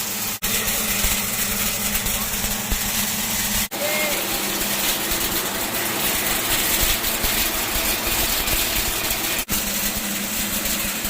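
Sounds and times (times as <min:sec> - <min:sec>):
motor hum: 0:00.0 - 0:11.0
rushing of air and grain: 0:00.0 - 0:11.0.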